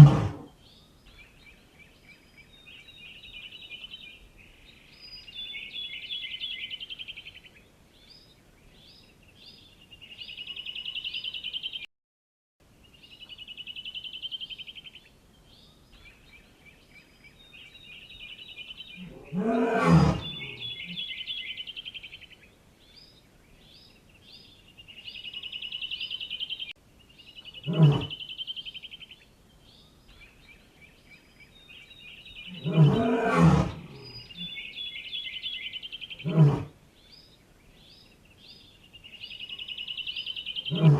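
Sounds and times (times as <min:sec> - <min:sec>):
lion growling: 0:00.0 - 0:00.5, 0:19.0 - 0:20.8, 0:27.6 - 0:28.2, 0:32.5 - 0:34.5, 0:40.7 - 0:40.9.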